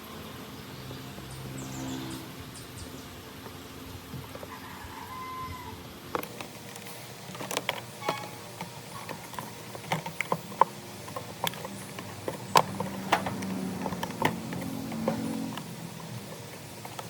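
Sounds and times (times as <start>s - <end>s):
clicks and taps of small parts: 6.1s - 17.0s.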